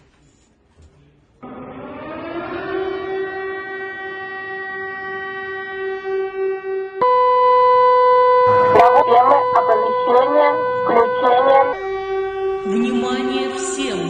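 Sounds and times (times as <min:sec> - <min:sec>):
warning siren wailing: 0:01.4 - 0:14.0.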